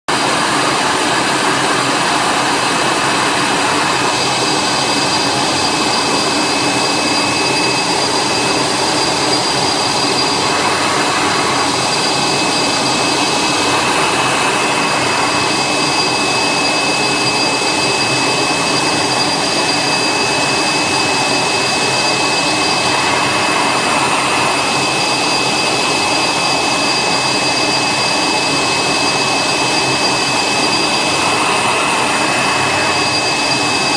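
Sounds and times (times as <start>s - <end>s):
high machine whines: 0.1s - 33.9s
milling machine rushing: 0.1s - 33.9s.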